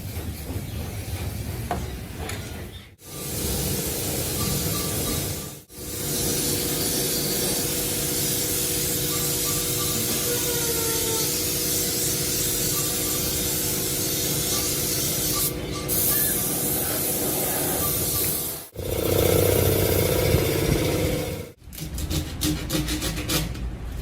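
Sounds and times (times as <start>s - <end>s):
compressed air hissing: 3.0s - 19.8s.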